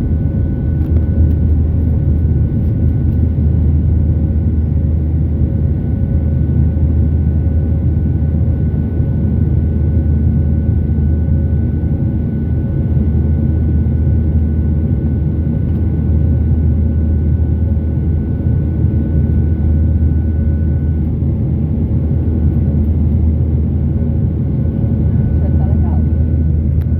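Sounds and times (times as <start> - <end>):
faint steady whine: 0.0 - 7.4, 13.2 - 26.9
jet engine rumble: 0.0 - 26.9.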